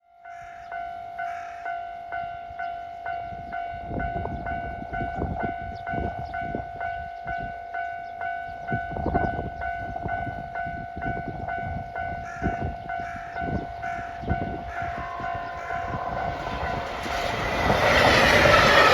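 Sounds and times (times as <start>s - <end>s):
train passing over rails: 8.2s - 18.9s
wheel clatter: 14.5s - 18.9s.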